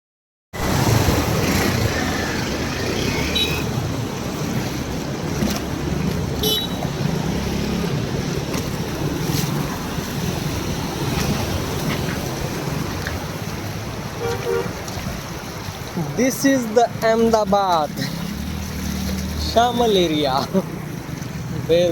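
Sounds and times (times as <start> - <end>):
wind rumbling on microphone: 0.6 - 16.2
heavy rain: 0.6 - 21.9
traffic on wet street: 0.6 - 21.9.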